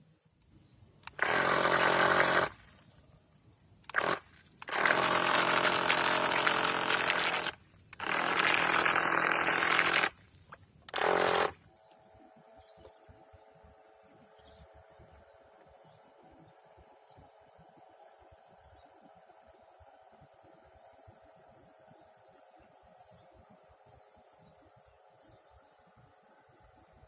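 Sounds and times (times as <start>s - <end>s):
small boat motor running hard: 1.1s - 2.6s, 3.9s - 10.2s, 10.9s - 11.6s.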